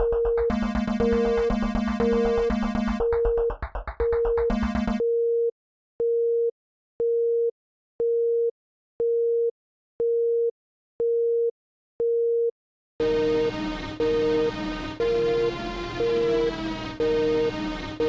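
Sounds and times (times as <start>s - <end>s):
music: 0.0s - 5.0s, 13.0s - 18.0s
repeating electronic beep: 0.0s - 5.0s.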